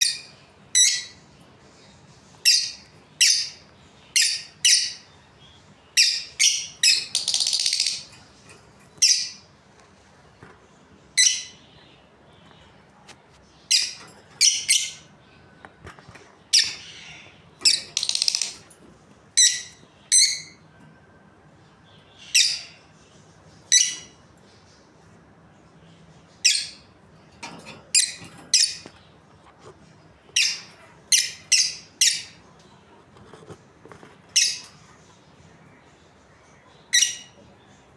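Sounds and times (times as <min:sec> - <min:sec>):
budgerigars chirping: 0:00.0 - 0:08.2, 0:16.4 - 0:18.7, 0:19.4 - 0:20.6, 0:22.0 - 0:22.8, 0:30.3 - 0:32.4, 0:34.0 - 0:34.8
harsh chattering bird calls: 0:00.0 - 0:20.8, 0:21.6 - 0:37.9.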